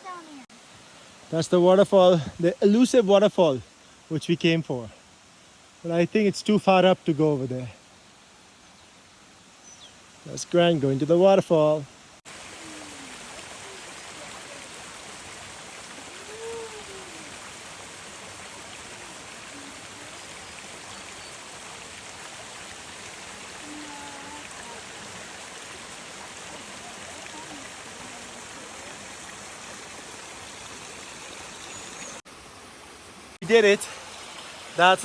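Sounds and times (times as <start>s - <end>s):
stream flowing: 0.0s - 35.0s
waterfall rushing: 11.4s - 35.0s.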